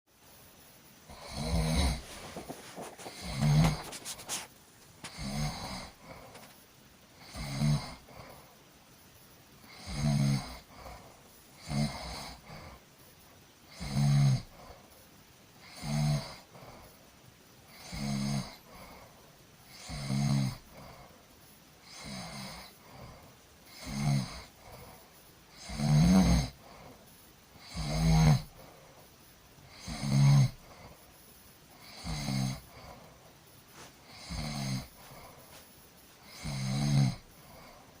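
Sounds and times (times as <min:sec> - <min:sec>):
quiet breaths: 0:00.1 - 0:38.0
person snoring: 0:01.1 - 0:06.5, 0:07.2 - 0:08.4, 0:09.6 - 0:12.8, 0:15.6 - 0:16.8, 0:17.7 - 0:19.0, 0:19.7 - 0:20.9, 0:21.8 - 0:24.8, 0:25.6 - 0:26.9, 0:27.6 - 0:28.6, 0:29.7 - 0:30.9, 0:31.8 - 0:33.0, 0:33.8 - 0:35.6, 0:36.2 - 0:37.9.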